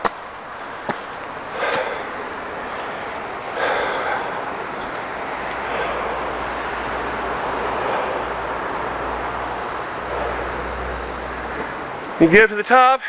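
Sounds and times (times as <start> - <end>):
person breathing hard: 1.5 - 11.7.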